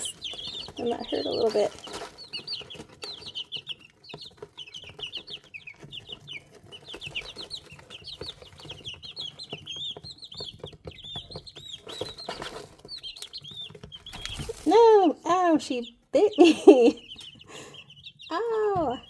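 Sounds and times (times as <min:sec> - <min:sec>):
chicks peeping: 0:00.0 - 0:19.0.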